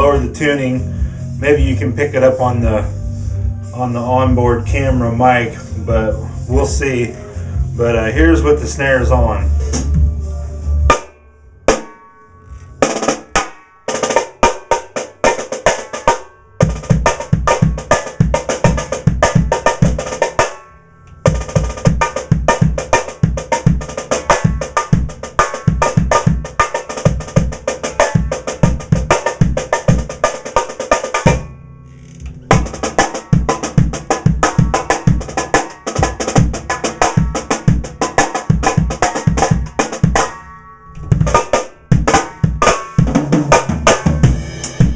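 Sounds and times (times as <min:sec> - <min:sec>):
bass drum strokes: 0:00.0 - 0:13.2, 0:16.6 - 0:44.9
high-tuned snare drum hits: 0:10.9 - 0:12.0, 0:12.8 - 0:20.6, 0:21.3 - 0:31.5, 0:32.5 - 0:40.4, 0:41.0 - 0:44.9.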